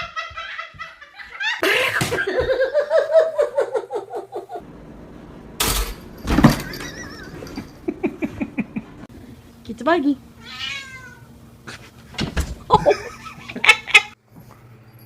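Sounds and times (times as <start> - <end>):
people laughing: 0.0 - 4.6, 6.8 - 9.1, 12.7 - 14.2.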